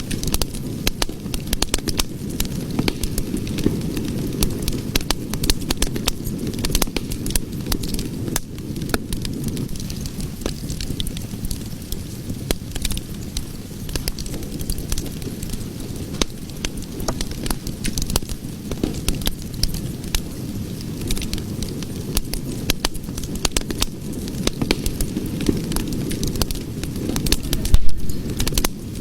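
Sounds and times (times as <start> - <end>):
fire crackling and popping: 0.0 - 29.0.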